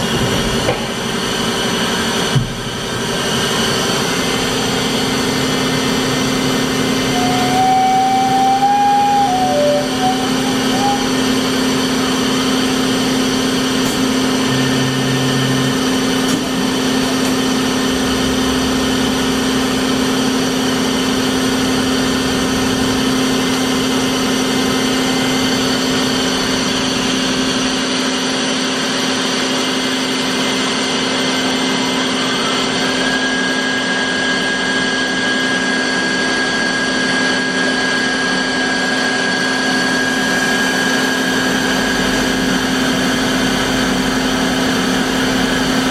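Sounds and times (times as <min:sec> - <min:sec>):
grinder machine hum: 0:00.0 - 0:34.5
thin high whine: 0:04.6 - 0:28.4.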